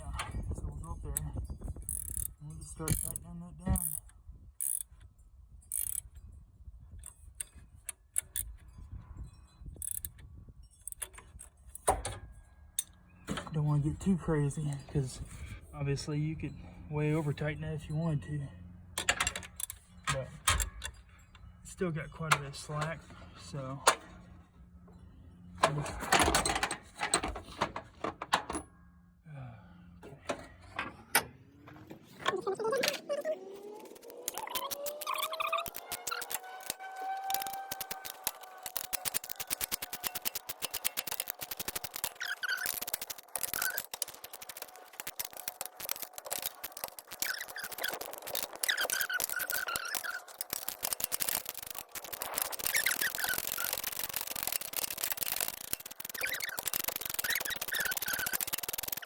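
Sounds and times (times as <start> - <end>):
small metal clicks: 1.1 - 5.1, 5.7 - 6.3, 6.9 - 8.8, 9.7 - 13.6, 18.9 - 21.5, 32.3 - 59.0
socket ratchet clicking: 1.8 - 3.2, 3.8 - 4.9, 5.7 - 6.1, 8.0 - 8.5, 9.8 - 10.2, 34.2 - 59.0.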